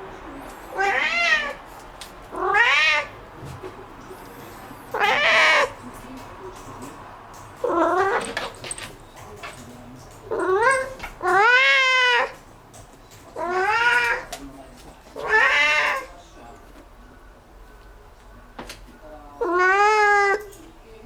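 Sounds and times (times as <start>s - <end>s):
cat meowing: 0.7s - 1.6s, 2.3s - 3.2s, 4.9s - 5.8s, 10.3s - 12.4s, 13.4s - 14.3s, 15.2s - 16.1s, 19.4s - 20.5s.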